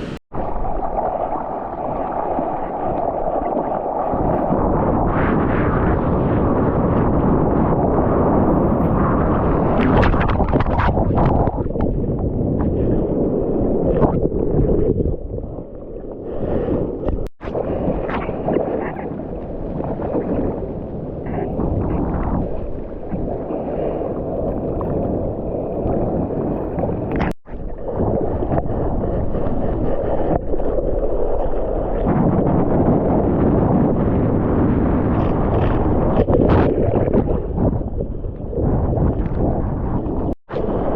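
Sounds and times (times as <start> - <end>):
surf water rushing and sloshing: 0.0 - 11.9, 12.7 - 40.9
wind buffeting the microphone: 0.0 - 40.9.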